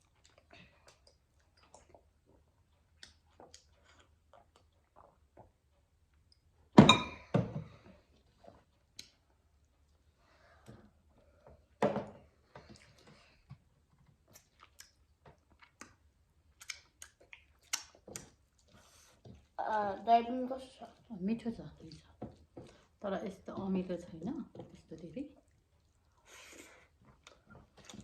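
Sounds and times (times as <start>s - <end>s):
chewing: 0.0s - 6.5s, 12.5s - 19.6s, 24.5s - 28.0s
tableware knocking: 6.8s - 7.6s.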